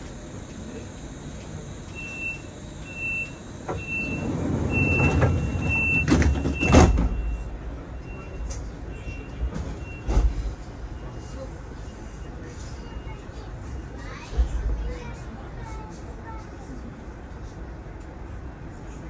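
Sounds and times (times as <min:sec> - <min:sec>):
door-closing warning beeps: 0:00.8 - 0:10.4
train doors knocking shut: 0:03.6 - 0:07.3.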